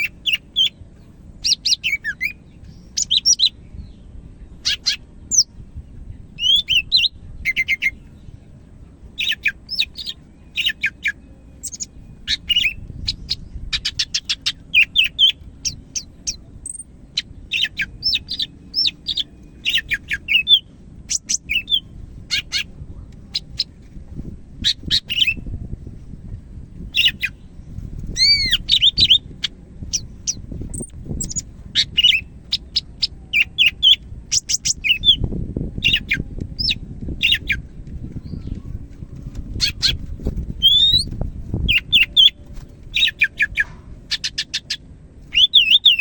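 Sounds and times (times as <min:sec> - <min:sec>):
bird singing chirps and whistles: 0:01.4 - 0:04.0, 0:06.4 - 0:08.1, 0:09.2 - 0:22.7, 0:24.6 - 0:25.5, 0:26.9 - 0:27.4, 0:28.1 - 0:29.3, 0:29.9 - 0:35.2, 0:35.8 - 0:38.6, 0:40.6 - 0:46.0.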